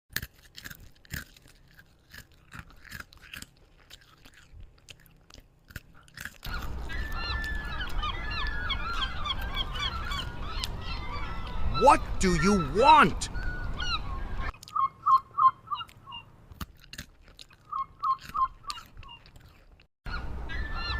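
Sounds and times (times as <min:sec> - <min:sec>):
crunchy chewing and biting: 0:00.1 - 0:13.8, 0:14.5 - 0:19.9
seagull squawking: 0:06.5 - 0:16.3, 0:20.1 - 0:20.9.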